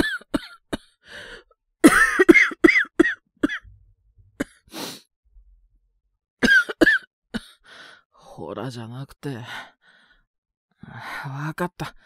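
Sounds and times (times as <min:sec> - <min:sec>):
man coughing hoarsely: 0:01.8 - 0:03.7, 0:06.4 - 0:07.5
short breath: 0:04.7 - 0:05.1.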